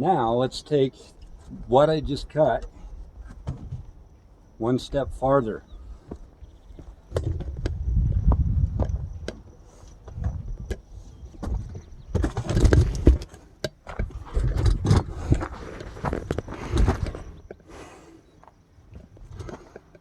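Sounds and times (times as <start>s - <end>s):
low rumbling: 0.0s - 13.2s
irregular knocks and clunks: 1.1s - 4.4s, 5.7s - 17.6s.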